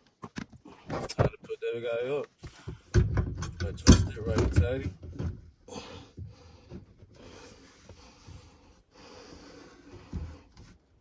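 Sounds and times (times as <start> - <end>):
person breathing hard: 5.7 - 10.7.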